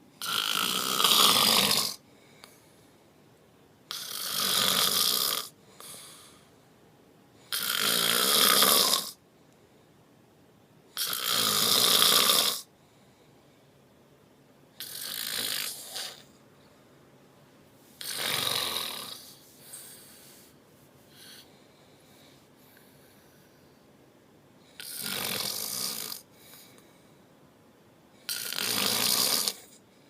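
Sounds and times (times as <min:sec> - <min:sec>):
person snoring: 0:00.2 - 0:02.0, 0:03.9 - 0:06.4, 0:07.5 - 0:09.2, 0:11.0 - 0:12.7, 0:14.8 - 0:16.4, 0:18.0 - 0:20.5, 0:24.7 - 0:26.3, 0:28.2 - 0:29.8
faint breath: 0:02.0 - 0:03.5, 0:05.6 - 0:07.5, 0:09.2 - 0:10.2, 0:12.7 - 0:14.0, 0:19.2 - 0:24.8, 0:26.2 - 0:28.3.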